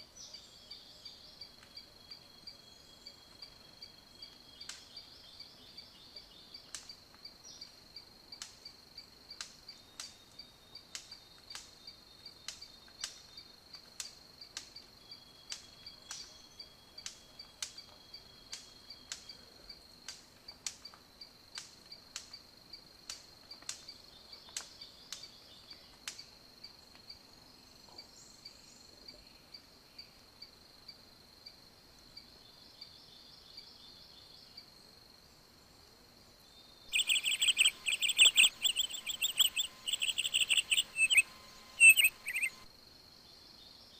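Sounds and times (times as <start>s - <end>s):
sharp irregular clicks: 36.9s - 42.6s
high-pitched insect trill: 36.9s - 42.7s.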